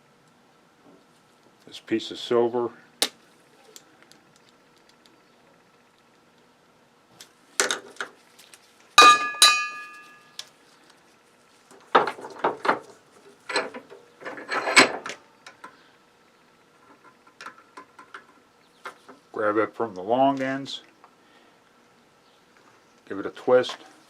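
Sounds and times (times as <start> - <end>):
metallic clink ringing: 9.0 - 10.4.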